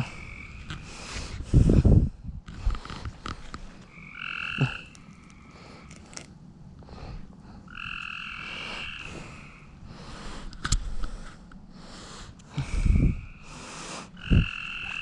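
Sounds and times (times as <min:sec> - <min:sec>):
frog trilling: 0:00.0 - 0:00.9, 0:03.9 - 0:06.3, 0:07.7 - 0:09.8, 0:14.2 - 0:15.0
faint clicks and rustles: 0:02.4 - 0:03.9.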